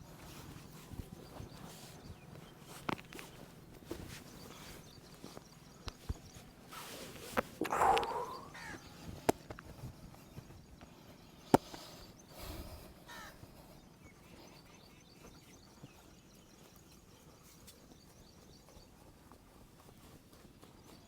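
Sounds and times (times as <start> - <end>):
crow cawing: 7.6 - 9.0, 13.1 - 13.4.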